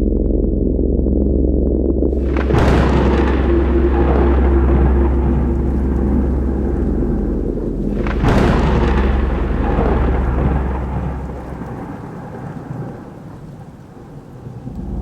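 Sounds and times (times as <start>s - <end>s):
low steady drone: 0.0s - 13.2s, 14.4s - 15.0s
thunderclap crack and rumble: 1.7s - 15.0s.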